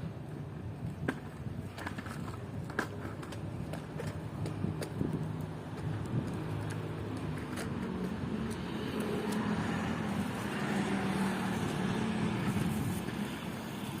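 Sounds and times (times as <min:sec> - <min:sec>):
vehicle passing: 0:04.6 - 0:14.0.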